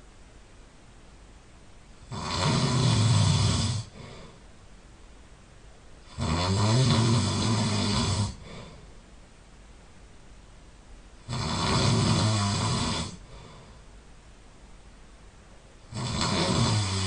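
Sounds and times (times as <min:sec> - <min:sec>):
person snoring loudly: 0:02.0 - 0:04.4, 0:06.1 - 0:08.8, 0:11.2 - 0:13.7, 0:15.9 - 0:17.0.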